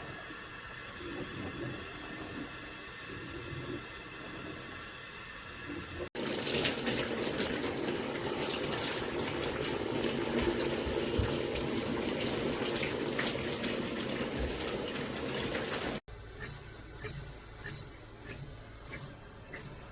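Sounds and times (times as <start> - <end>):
tap water running and splashing: 5.6 - 16.0.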